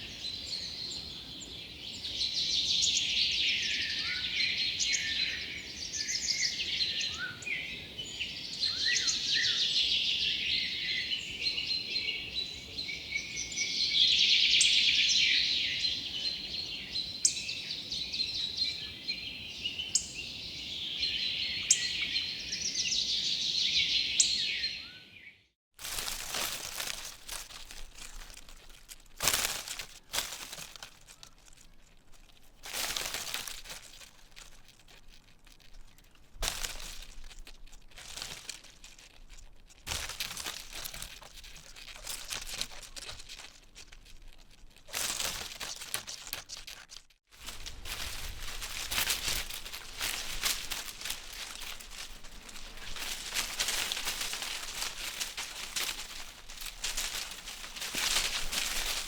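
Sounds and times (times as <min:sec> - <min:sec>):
wind rustling tree leaves: 0:25.8 - 0:38.6, 0:44.8 - 0:59.0.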